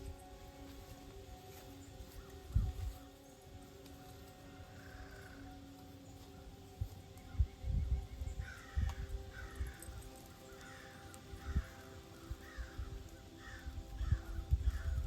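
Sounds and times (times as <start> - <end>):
faint background music: 0.0 - 15.0
crow cawing: 4.5 - 5.6, 8.4 - 15.0.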